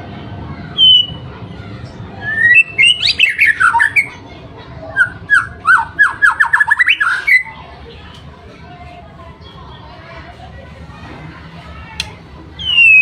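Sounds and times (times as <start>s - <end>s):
bird whistling song: 0.8s - 1.2s, 2.2s - 4.2s, 5.0s - 7.5s, 12.6s - 13.0s.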